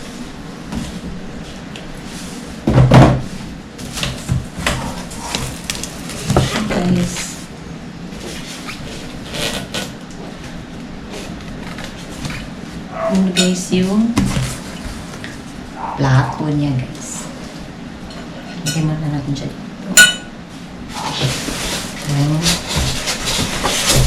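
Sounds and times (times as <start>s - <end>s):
cardboard packaging knocks and rustles: 22.6s - 24.0s.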